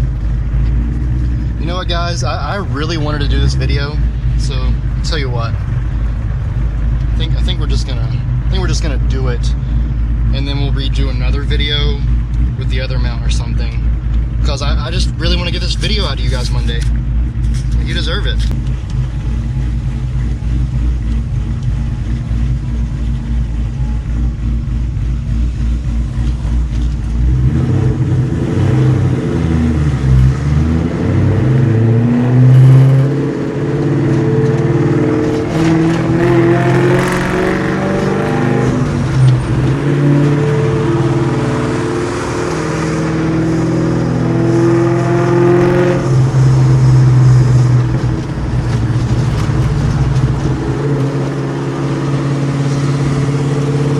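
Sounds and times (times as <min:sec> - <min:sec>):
car engine idling: 0:00.0 - 0:53.9
car engine revving through gears: 0:24.8 - 0:53.9.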